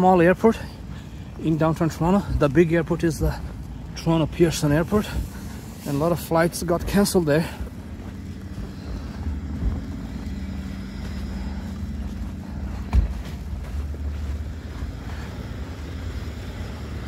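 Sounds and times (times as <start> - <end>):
low outdoor rumble: 0.0 - 17.0
faint steady hum: 0.2 - 17.0.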